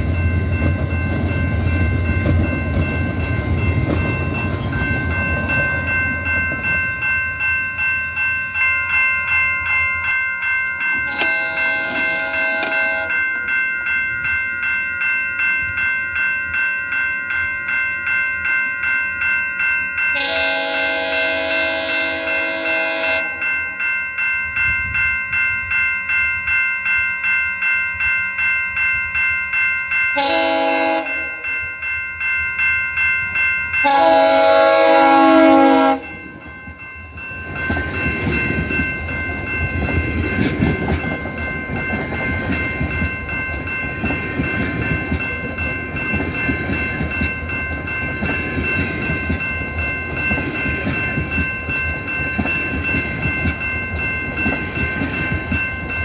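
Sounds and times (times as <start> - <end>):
level-crossing bell ringing: 0.0 - 56.0
train rumble and wheel clatter: 0.0 - 56.0
train chime horn: 10.8 - 13.6, 20.0 - 23.9, 30.1 - 31.9, 33.2 - 36.9.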